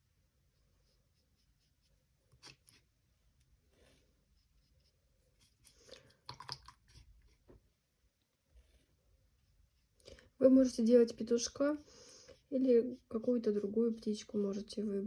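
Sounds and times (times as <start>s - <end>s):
brush scratching on paper: 0.5s - 3.0s, 3.6s - 5.9s, 8.5s - 10.0s, 10.6s - 14.7s.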